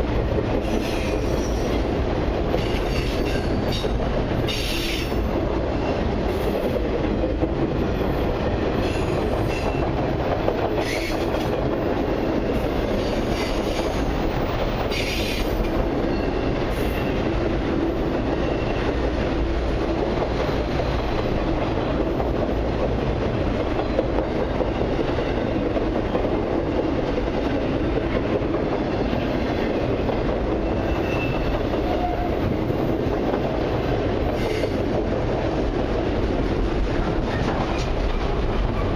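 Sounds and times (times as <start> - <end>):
freight train wheels rumbling on rail: 0.0 - 38.9
train clatter: 0.0 - 38.9
high-pitched wheel squeals: 30.6 - 32.4.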